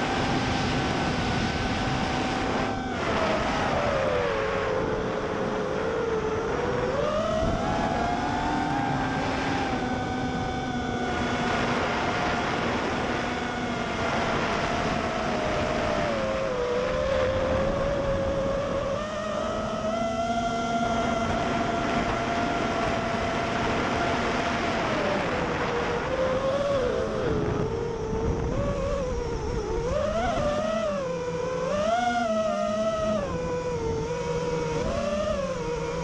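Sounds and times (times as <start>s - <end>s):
drone motors whining: 0.0s - 36.0s
wind noise on microphone: 0.0s - 36.0s.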